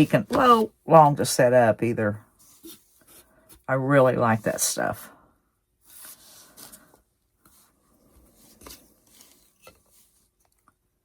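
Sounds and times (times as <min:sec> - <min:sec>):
faint rustling and rubbing: 0:02.3 - 0:05.0, 0:05.8 - 0:10.6.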